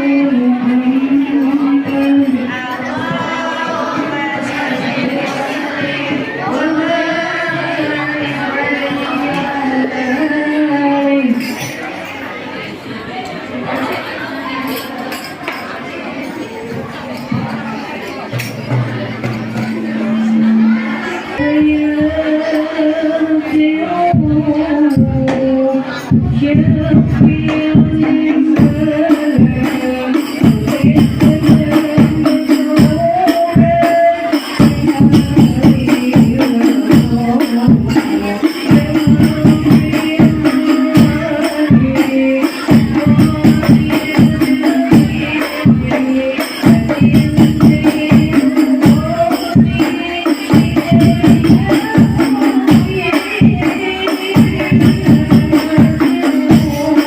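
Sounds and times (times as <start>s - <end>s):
person singing: 0.0s - 11.6s, 18.9s - 57.0s
frame drums beating: 16.7s - 22.6s, 26.1s - 57.0s.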